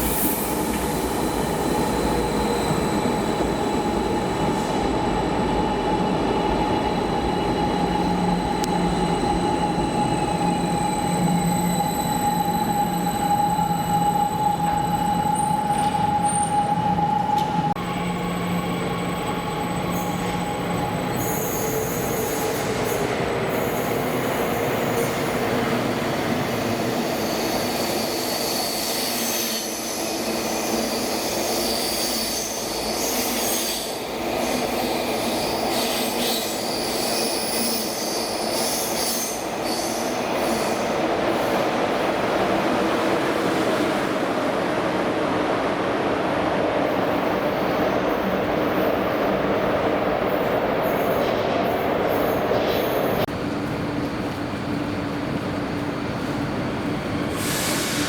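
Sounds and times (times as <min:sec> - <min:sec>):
train wheel and track rumble: 0:00.0 - 0:58.0
high wheel squeal: 0:08.2 - 0:25.2, 0:26.6 - 0:41.6.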